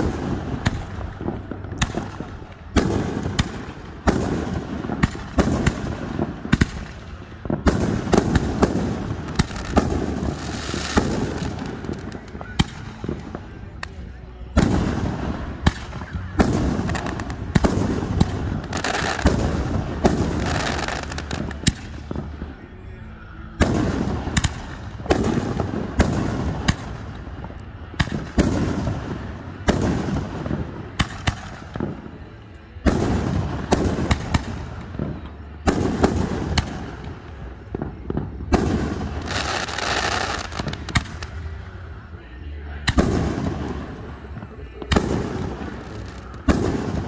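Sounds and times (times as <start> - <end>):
fireworks bangs with echo: 0.0 - 22.8, 23.4 - 47.0
fireworks crackling: 0.0 - 47.0.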